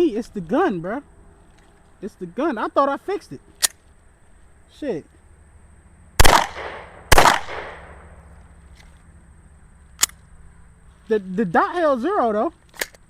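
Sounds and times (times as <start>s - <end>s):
sharp click: 3.6s - 3.8s, 9.9s - 10.2s, 12.7s - 13.0s
pistol shots echoing: 6.2s - 8.1s.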